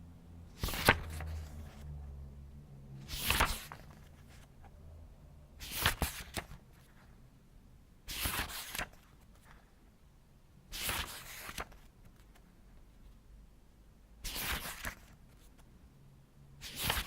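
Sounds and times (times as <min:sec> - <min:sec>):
book pages turning: 0:00.6 - 0:01.9, 0:03.0 - 0:04.7, 0:05.6 - 0:07.1, 0:08.1 - 0:09.6, 0:10.7 - 0:12.4, 0:14.2 - 0:15.7, 0:16.6 - 0:17.0.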